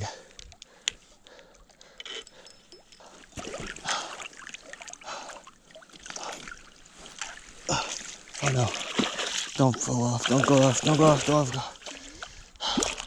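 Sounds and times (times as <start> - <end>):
fish thrashing and splashing water: 3.2 - 13.0.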